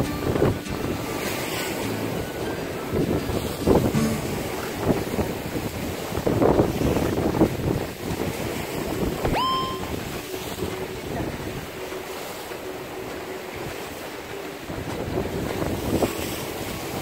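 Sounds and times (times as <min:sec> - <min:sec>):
sea waves on rocks: 0:00.0 - 0:17.0
wind buffeting microphone: 0:00.0 - 0:17.0
short whistle-like tone: 0:09.3 - 0:09.9.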